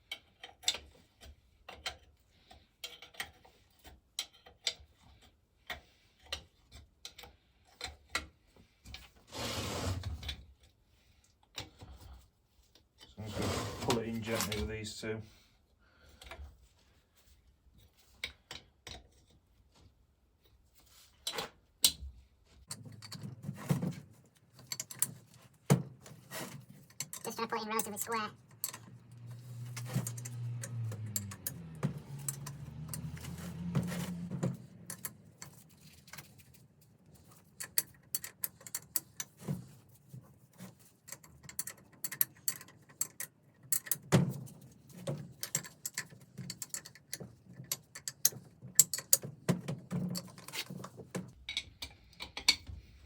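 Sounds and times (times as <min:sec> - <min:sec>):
metallic clicks and taps: 0:26.9 - 0:33.2.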